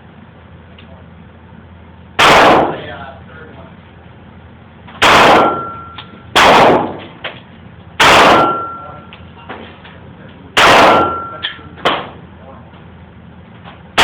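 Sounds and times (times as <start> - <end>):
pistol shots: 2.2 - 2.9, 5.0 - 7.1, 8.0 - 8.8, 10.6 - 12.1.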